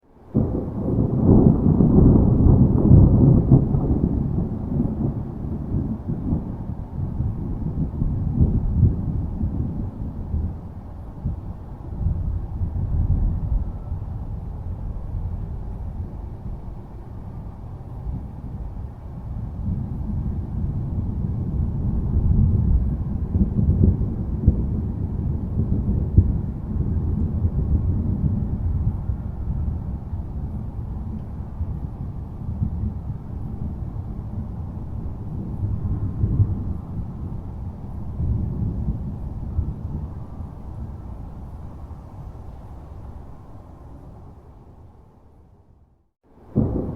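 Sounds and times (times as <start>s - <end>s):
low rumble of thunder: 0.1s - 46.9s
sharp thunder cracks: 0.3s - 10.6s, 20.9s - 29.8s, 46.4s - 46.9s.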